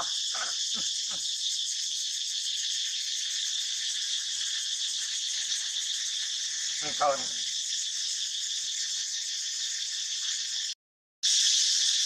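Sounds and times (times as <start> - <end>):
high-pitched insect chorus: 0.0 - 12.0.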